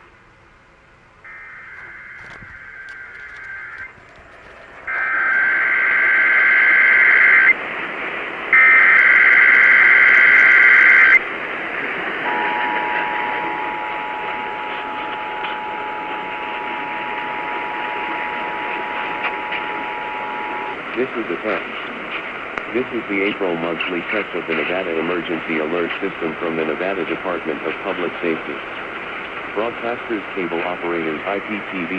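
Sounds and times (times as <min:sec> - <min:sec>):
radio hiss: 0:00.9 - 0:31.9
buzzy warbling data screech: 0:01.3 - 0:07.6, 0:12.3 - 0:20.8
two-tone attention signal: 0:12.2 - 0:20.8.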